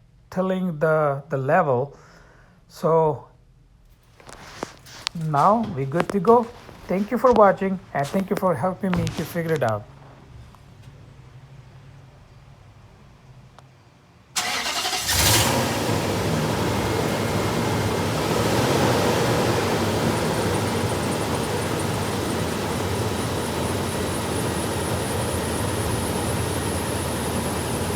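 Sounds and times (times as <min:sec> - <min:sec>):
truck engine starting and idling: 0:14.4 - 0:27.9.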